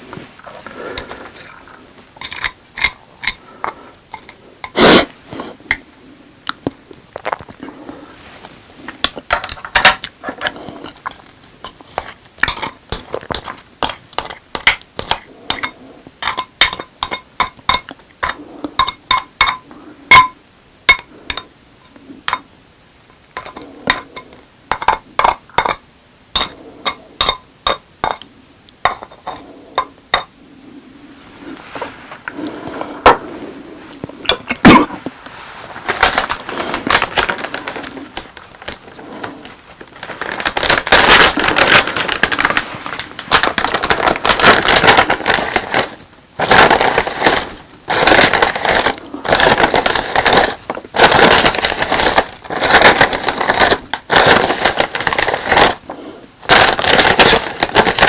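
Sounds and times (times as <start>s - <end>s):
chewing and crunching food: 6.4s - 8.1s
spoon and dish clinking: 18.8s - 21.5s.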